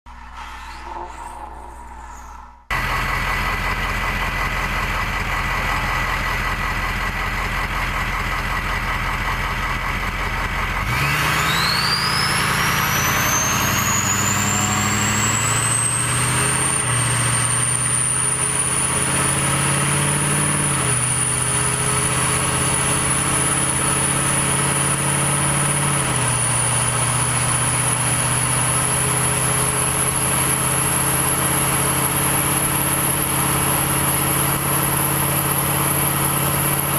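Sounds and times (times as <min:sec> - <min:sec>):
shrill turbo whistle: 0:00.1 - 0:02.7, 0:11.0 - 0:19.2
diesel engine running: 0:02.7 - 0:36.9.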